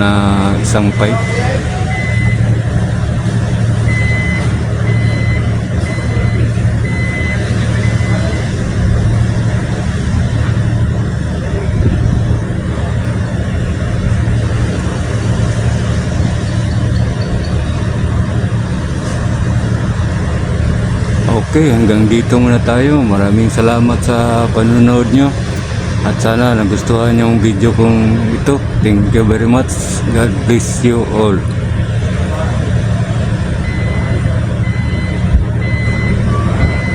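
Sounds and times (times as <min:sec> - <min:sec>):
reversing alarm beeping: 0:00.0 - 0:09.8, 0:15.5 - 0:18.9, 0:21.3 - 0:28.6, 0:33.5 - 0:36.9
diesel machinery droning: 0:00.0 - 0:36.9.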